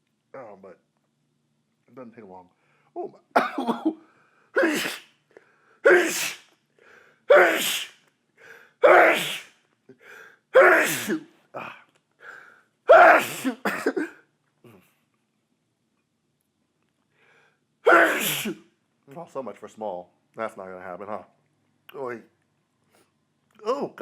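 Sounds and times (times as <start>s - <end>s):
person sneezing wetly: 3.4s - 3.9s, 4.6s - 5.1s, 5.8s - 6.5s, 7.3s - 8.0s, 8.8s - 9.6s, 10.6s - 11.8s, 12.9s - 14.8s, 17.8s - 18.6s
breaths drawn in: 4.6s - 5.0s, 5.8s - 11.2s.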